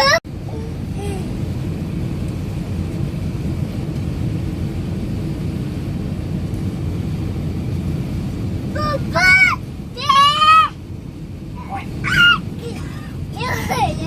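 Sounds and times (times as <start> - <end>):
airliner cabin rumble: 0.0 - 14.0.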